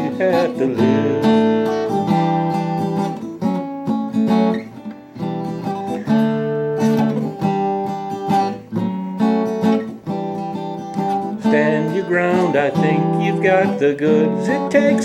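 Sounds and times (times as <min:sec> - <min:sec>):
person singing: 0:00.0 - 0:02.4, 0:11.2 - 0:15.0
acoustic guitar strumming: 0:00.0 - 0:15.0.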